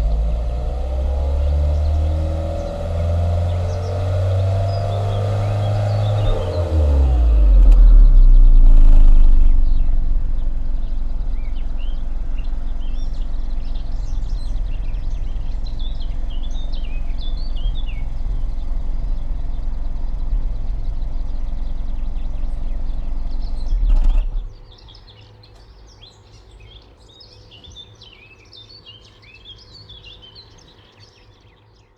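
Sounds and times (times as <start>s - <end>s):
car engine idling: 0.0s - 24.7s
engine switching off: 0.0s - 24.7s
birds chirping: 0.0s - 31.9s.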